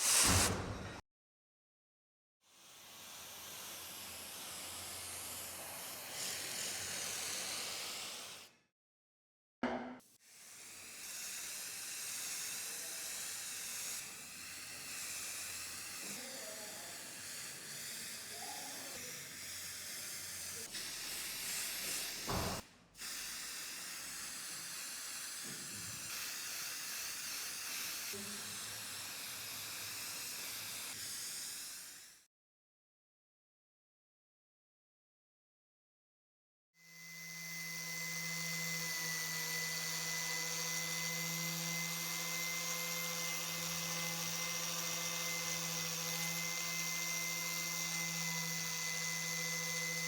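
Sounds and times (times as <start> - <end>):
compressed-air jet hissing: 0.0 - 0.9, 2.8 - 8.5, 10.3 - 32.2.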